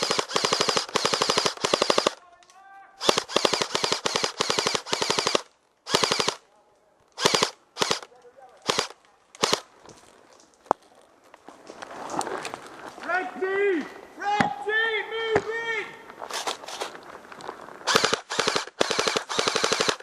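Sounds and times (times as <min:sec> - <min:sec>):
airsoft gun firing bursts: 0:00.0 - 0:02.2, 0:03.0 - 0:06.4, 0:07.2 - 0:09.6, 0:17.9 - 0:20.0.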